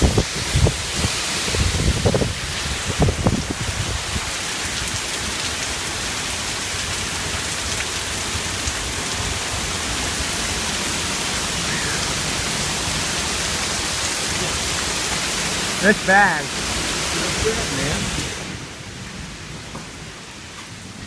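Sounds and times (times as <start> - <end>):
wind buffeting microphone: 0.0 - 4.4
heavy rain pouring: 0.0 - 21.0.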